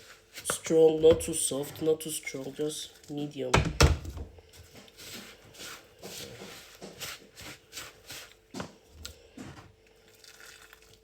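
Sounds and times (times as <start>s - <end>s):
spoon stirring in a bowl: 4.6s - 8.7s.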